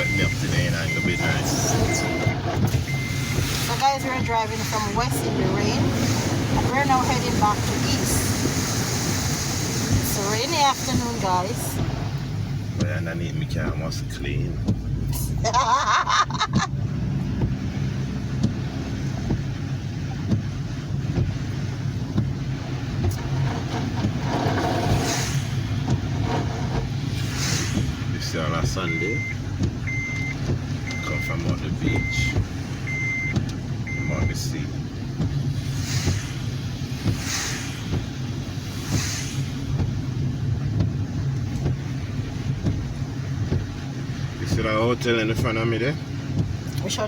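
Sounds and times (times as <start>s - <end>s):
car driving hum inside cabin: 0.0s - 47.0s
tyres hissing on wet road: 0.0s - 47.0s
soft swish: 27.0s - 28.1s, 35.5s - 40.2s.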